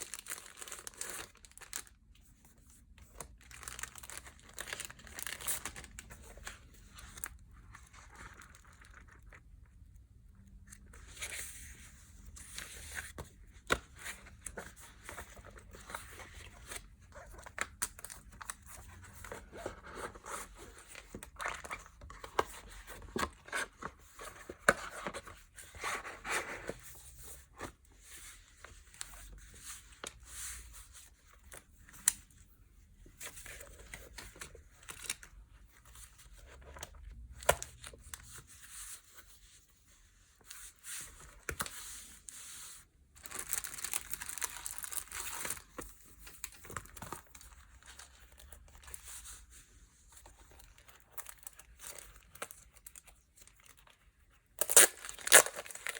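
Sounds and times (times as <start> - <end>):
packaging crinkling and tearing: 0.0 - 2.0, 3.2 - 6.1, 43.2 - 48.1, 54.6 - 55.9.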